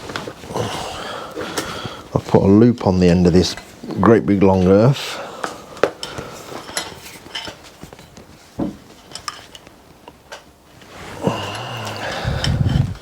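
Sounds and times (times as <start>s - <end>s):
small parts and tools clinking: 5.4s - 8.2s, 9.0s - 13.0s.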